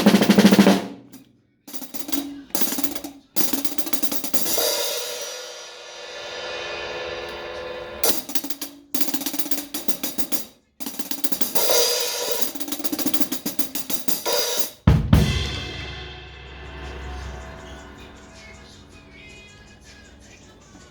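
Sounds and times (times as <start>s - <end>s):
music with fast drum pattern: 0.0s - 20.9s
heavy low boom: 14.9s - 19.2s.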